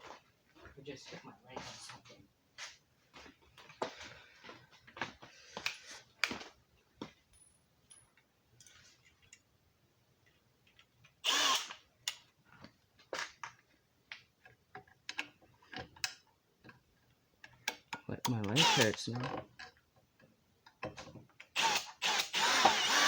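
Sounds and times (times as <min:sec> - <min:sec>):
power drill driving a screw: 0:11.2 - 0:11.8, 0:18.6 - 0:19.0, 0:21.6 - 0:23.0.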